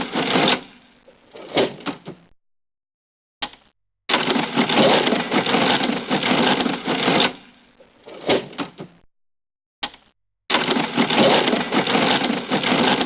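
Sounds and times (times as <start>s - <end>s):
cash register clicks: 0.0s - 0.8s, 4.1s - 9.0s, 9.8s - 13.0s
cash register clattering: 0.0s - 2.1s, 4.1s - 9.0s, 10.5s - 13.0s.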